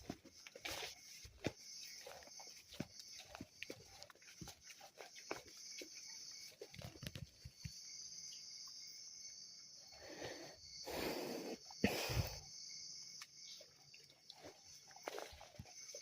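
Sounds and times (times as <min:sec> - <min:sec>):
high insect chorus: 0:00.0 - 0:16.0.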